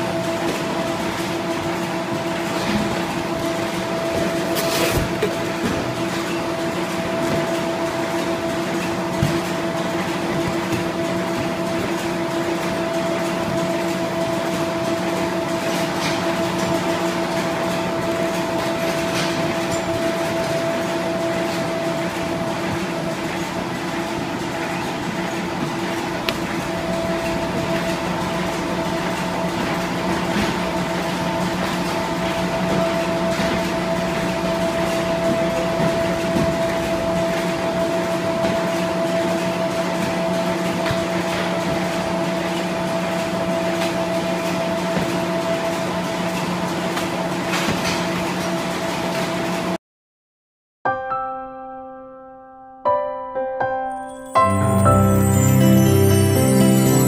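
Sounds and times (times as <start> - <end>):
machine humming: 0.0 - 43.5.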